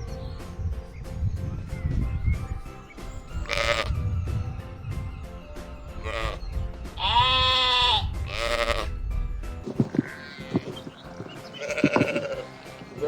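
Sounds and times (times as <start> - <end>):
soft background music: 0.0 - 13.0
sheep bleating: 3.4 - 4.0, 6.0 - 8.9, 9.7 - 13.0.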